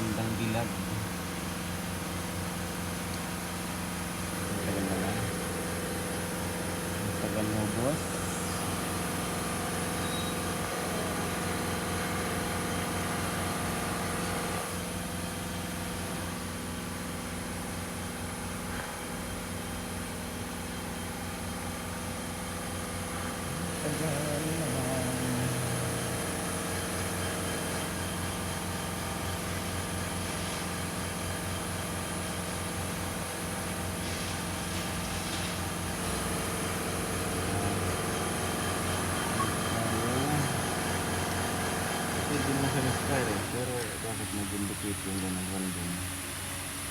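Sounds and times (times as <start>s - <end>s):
car engine idling: 35.9s - 45.7s.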